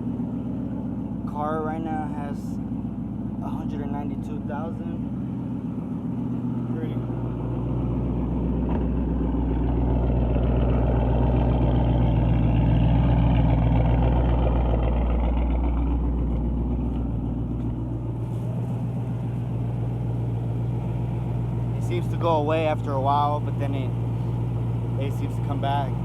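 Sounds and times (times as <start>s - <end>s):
engine running: 0.0s - 26.0s
engine knocking: 7.6s - 18.0s.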